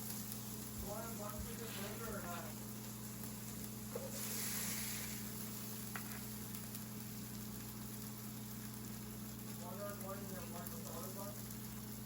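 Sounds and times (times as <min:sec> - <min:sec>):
burger patties sizzling: 0:00.0 - 0:12.0
steady low hum: 0:00.0 - 0:12.0.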